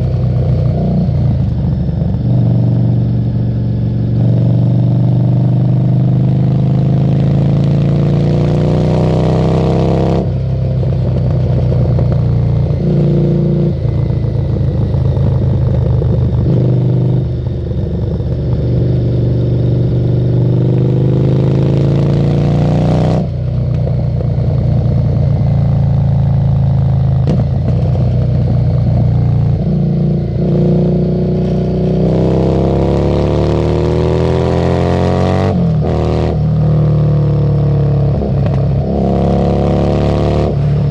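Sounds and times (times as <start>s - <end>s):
motorcycle engine shifting gears: 0.0s - 40.9s.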